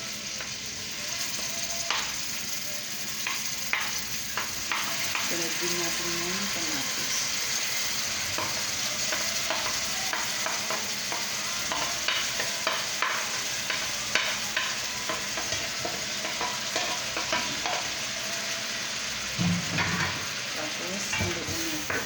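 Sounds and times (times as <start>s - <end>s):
vegetables sizzling in oil: 0.0s - 22.0s
utensil scraping a pan: 6.6s - 22.0s.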